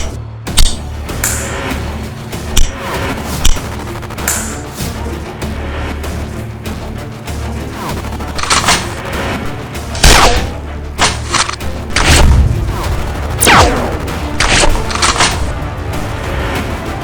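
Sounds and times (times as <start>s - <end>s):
action music with heavy bass: 0.0s - 17.0s
booming gunshot-like hits: 10.0s - 16.1s.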